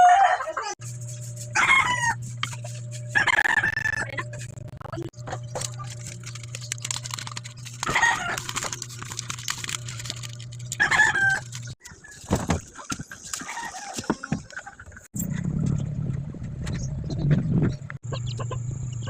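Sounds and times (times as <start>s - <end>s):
steady low hum: 0.8s - 11.8s.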